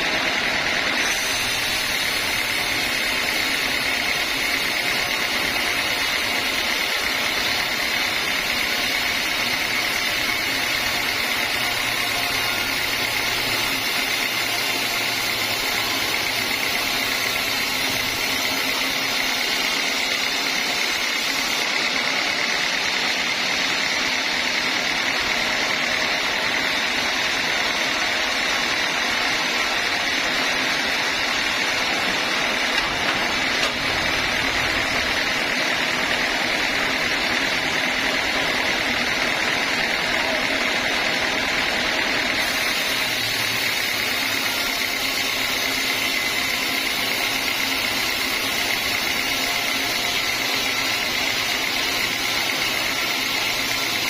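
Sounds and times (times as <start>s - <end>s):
band saw running with whine: 0.0s - 54.0s.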